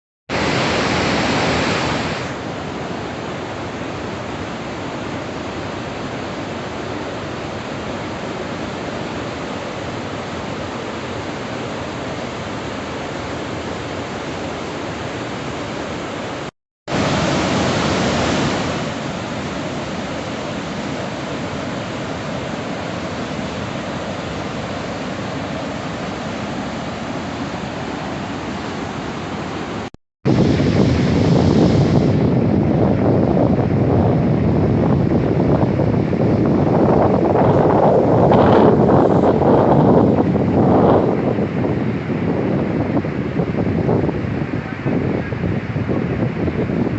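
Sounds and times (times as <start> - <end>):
waterfall rushing: 0.3 - 32.4.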